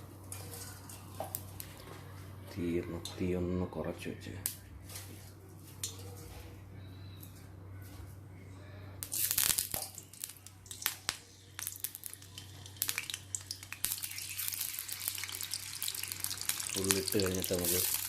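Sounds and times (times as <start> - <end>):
oil crackling and popping: 9.0 - 18.0
potatoes sizzling in hot oil: 9.1 - 18.0.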